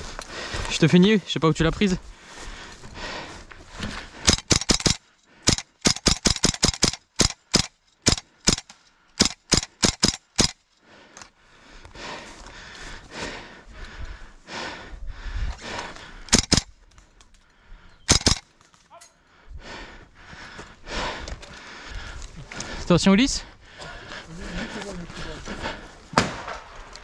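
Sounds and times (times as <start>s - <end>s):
airsoft gun shots: 16.3s - 16.7s, 18.1s - 18.4s.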